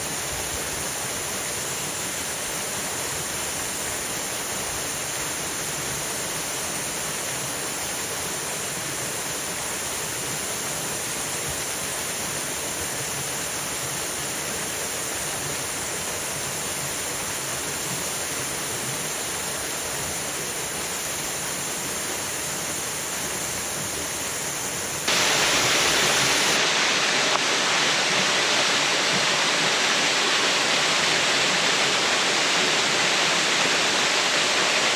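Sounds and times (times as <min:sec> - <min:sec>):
small waterfall rushing: 0:00.0 - 0:34.9.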